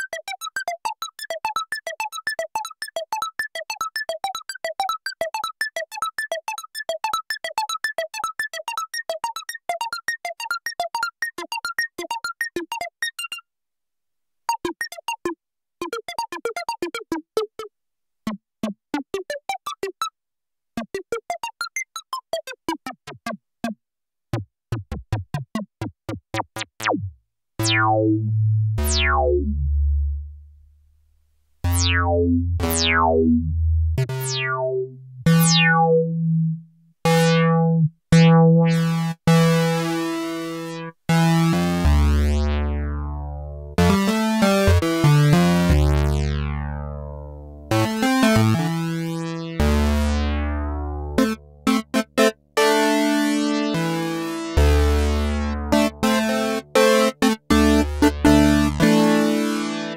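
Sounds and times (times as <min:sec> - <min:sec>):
heavy synth bass notes and chords: 0:26.6 - 0:30.5, 0:31.6 - 0:59.9
short plucked synth notes: 0:26.6 - 0:30.5, 0:31.6 - 0:39.0.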